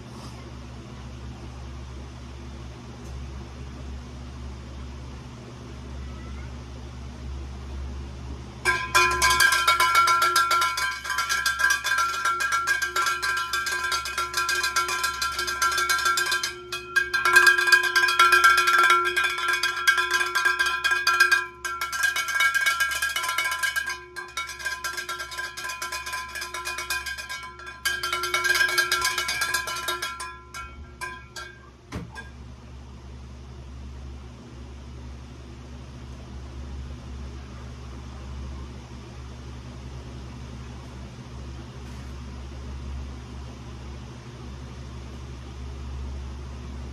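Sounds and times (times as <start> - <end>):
metal object rattling: 8.7 - 31.6.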